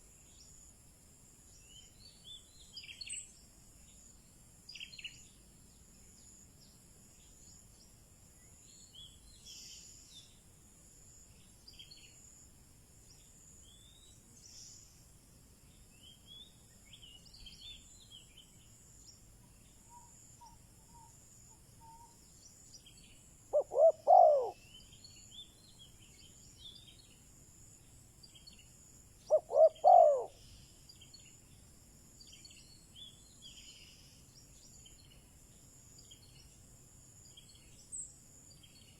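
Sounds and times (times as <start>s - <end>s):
small birds chirping: 1.5s - 10.4s, 13.1s - 38.9s
dove cooing: 23.5s - 24.6s, 29.3s - 30.4s.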